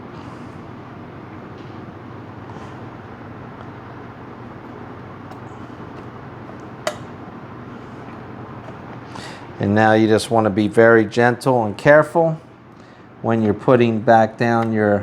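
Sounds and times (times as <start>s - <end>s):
low background hum: 0.0s - 15.0s
faint handling noises: 1.4s - 9.7s.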